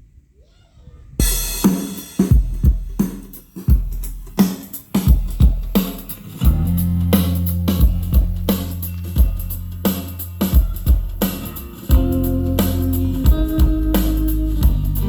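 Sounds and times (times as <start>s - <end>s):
kick drum and snare: 1.2s - 6.7s, 9.2s - 15.0s
deep bass line: 6.4s - 15.0s.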